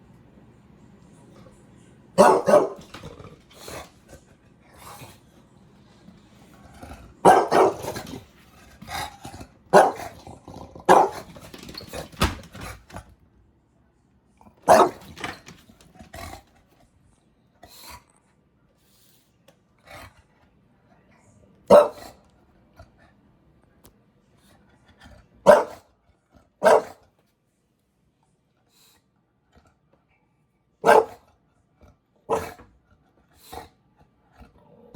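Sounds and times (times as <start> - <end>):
dog barking and growling: 2.2 - 5.2, 6.6 - 11.8, 14.4 - 16.5, 21.7 - 22.3, 25.2 - 27.1, 30.8 - 32.7.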